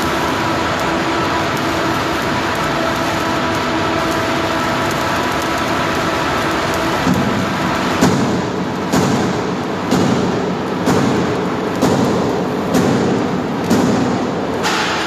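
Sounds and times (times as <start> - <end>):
arc welding hiss: 0.0 - 15.0
metal knocks booming in tank: 8.0 - 15.0.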